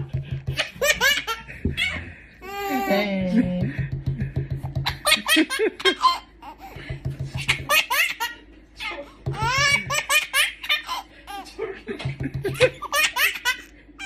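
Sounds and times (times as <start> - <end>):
knocking on a desk: 0.0 - 1.8, 3.5 - 5.0, 6.8 - 7.7, 12.0 - 12.7
baby laughing: 0.5 - 3.1, 4.8 - 6.8, 7.4 - 13.7.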